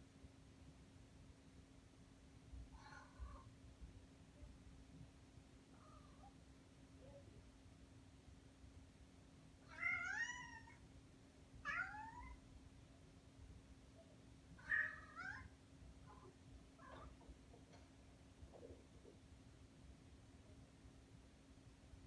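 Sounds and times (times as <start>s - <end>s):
cat meowing: 9.7s - 10.8s, 11.6s - 12.4s, 14.6s - 15.5s.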